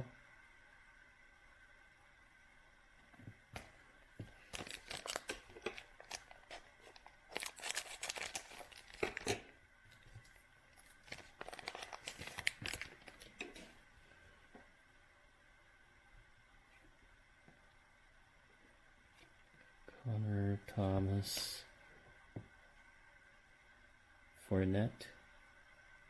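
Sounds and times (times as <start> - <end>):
plastic wrapper tearing and crinkling: 4.4 - 9.4, 10.2 - 13.6.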